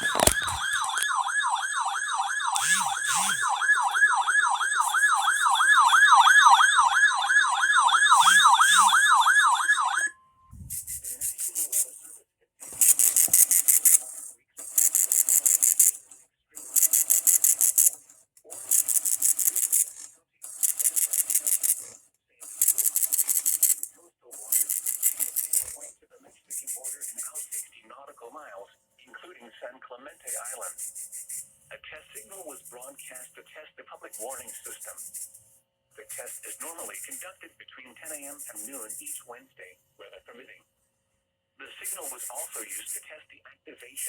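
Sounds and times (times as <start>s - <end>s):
warbling electronic siren tone: 0.0s - 11.0s
harsh buzzing data bursts: 0.0s - 11.2s, 12.6s - 16.0s.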